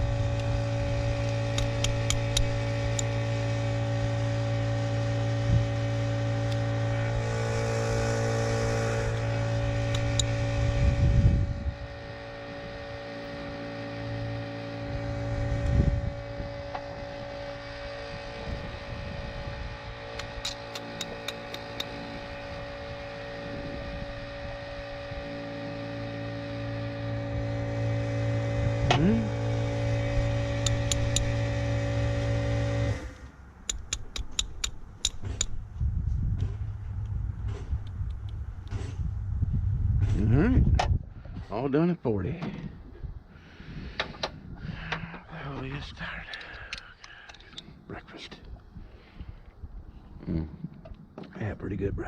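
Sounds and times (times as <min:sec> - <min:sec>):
motor humming: 0:00.0 - 0:41.4.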